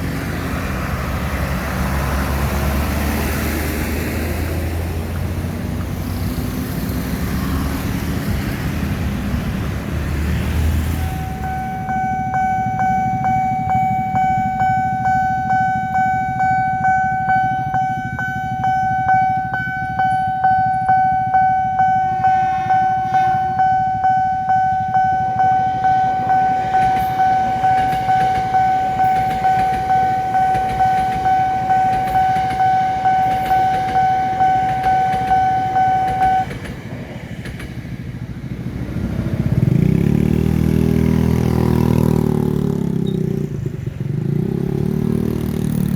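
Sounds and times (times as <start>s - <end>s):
road traffic: 0.0s - 45.9s
vehicle engine: 0.0s - 45.9s
level crossing bell ringing: 11.0s - 36.5s.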